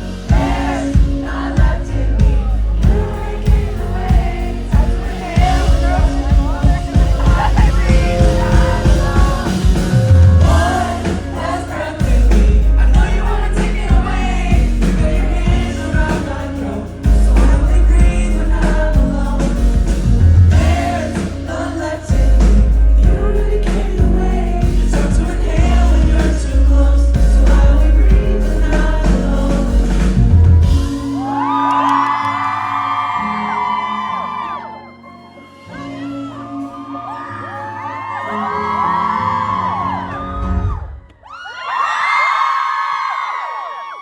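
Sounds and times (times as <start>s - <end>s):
person singing: 0.0s - 40.9s
live band playing pop song: 0.0s - 41.0s
crowd screaming: 3.1s - 18.0s, 30.2s - 44.0s.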